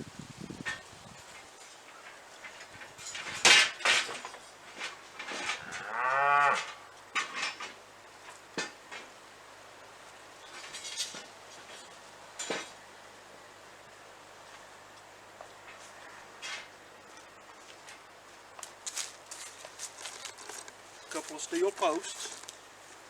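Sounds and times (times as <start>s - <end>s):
metal tools clanking: 1.9s - 5.6s, 10.5s - 12.8s
cow mooing: 5.6s - 6.9s.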